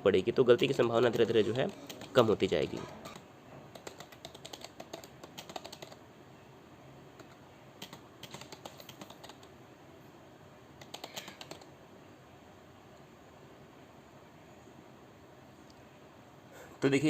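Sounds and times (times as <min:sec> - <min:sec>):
typing on computer keyboard: 0:00.6 - 0:02.3, 0:03.0 - 0:06.0, 0:07.2 - 0:09.5, 0:10.8 - 0:11.7.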